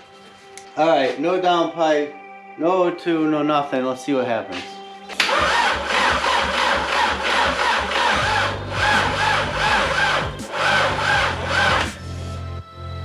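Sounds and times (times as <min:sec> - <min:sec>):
starter motor cranking engine: 0:05.2 - 0:12.2.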